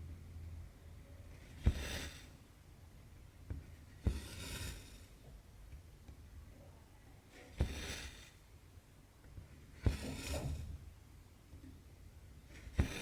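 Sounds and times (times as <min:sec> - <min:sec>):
thread rasping through fabric: 0:01.3 - 0:02.4, 0:03.4 - 0:05.3, 0:07.3 - 0:08.5, 0:09.4 - 0:10.9, 0:12.4 - 0:13.0
needle tapping through cloth: 0:03.4 - 0:04.6, 0:07.4 - 0:08.1, 0:12.6 - 0:13.0.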